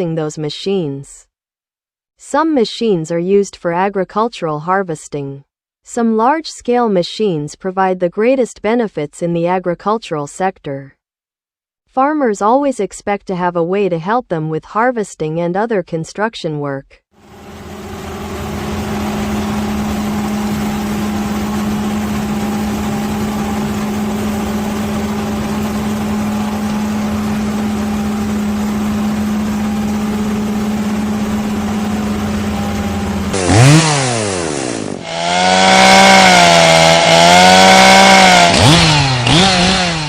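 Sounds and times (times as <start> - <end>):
small engine revving: 17.2 - 40.0.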